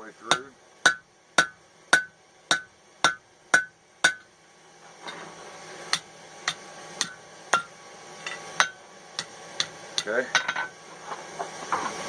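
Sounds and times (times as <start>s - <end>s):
steady hiss: 0.0s - 12.0s
hammer striking hot metal: 0.3s - 4.3s, 5.9s - 10.7s.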